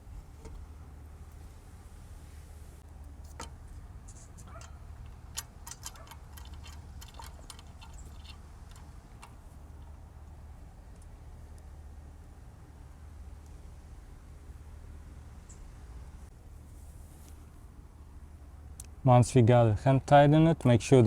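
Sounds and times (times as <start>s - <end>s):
small metal parts clinking: 4.1s - 10.0s.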